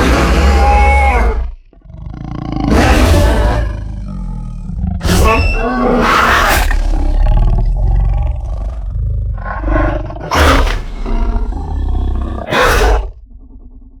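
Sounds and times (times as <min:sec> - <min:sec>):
creature roaring cries: 0:00.0 - 0:01.5, 0:02.5 - 0:03.9, 0:04.8 - 0:08.8, 0:09.4 - 0:13.2.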